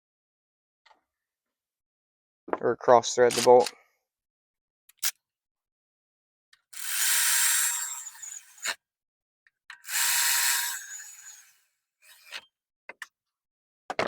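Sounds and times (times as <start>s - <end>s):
ratchet driving bolts: 9.7s - 12.4s.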